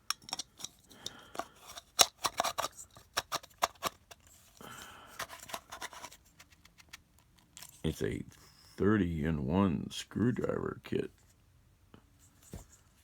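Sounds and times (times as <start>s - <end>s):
tools clicking and clattering: 0.0s - 4.2s
scraping and rubbing: 5.2s - 8.8s.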